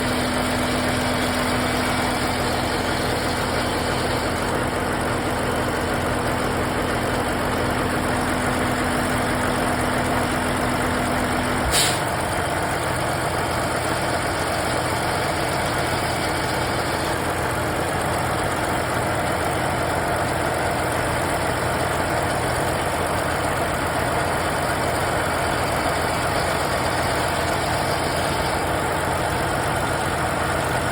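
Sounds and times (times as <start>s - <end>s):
truck engine idling: 0.0s - 30.9s.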